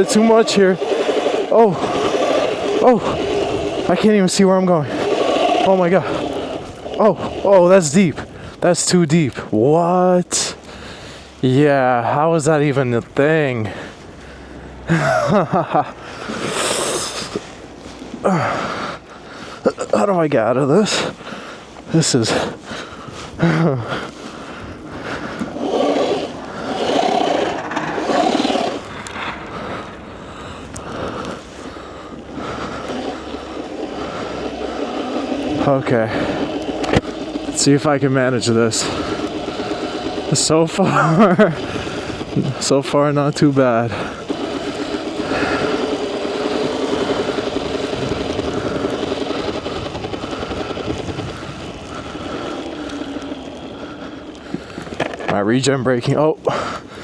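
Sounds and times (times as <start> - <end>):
electric motor whine: 0.0 - 7.5, 24.0 - 42.7, 44.0 - 55.3
bike churning and scraping in snow: 0.0 - 57.0
wind and tyre noise: 0.0 - 57.0.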